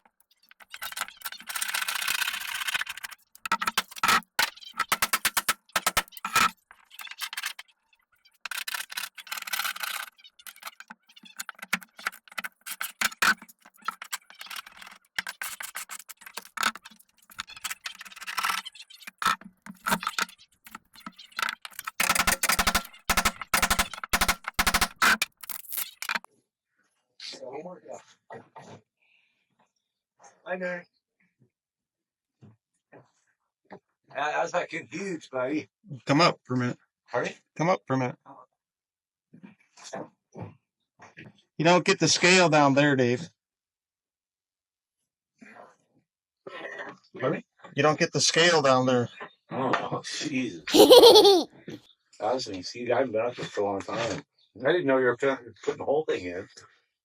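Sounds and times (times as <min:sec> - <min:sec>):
rapid clicking and rattling: 0:00.5 - 0:07.6, 0:08.4 - 0:26.2
hand tools scraping rotten wood: 0:00.6 - 0:06.5, 0:08.4 - 0:26.2.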